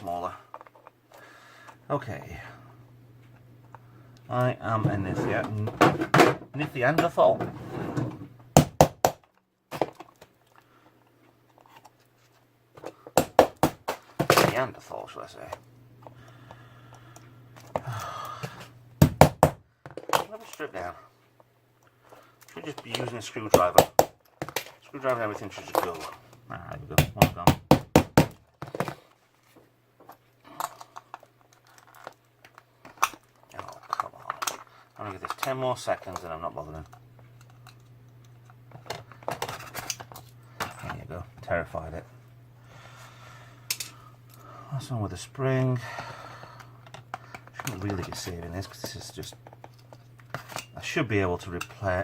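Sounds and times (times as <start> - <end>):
faint low hum: 0.0 - 52.0
knocks on hard plastic: 8.6 - 9.2, 13.2 - 14.4, 19.0 - 19.6, 23.6 - 24.2, 27.0 - 28.4
plastic and metal parts clicking: 30.1 - 37.9.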